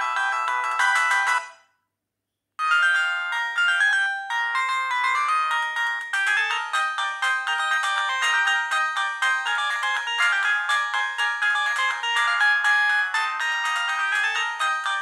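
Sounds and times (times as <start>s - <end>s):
mobile phone ringtone melody: 0.0s - 1.7s, 2.6s - 15.0s.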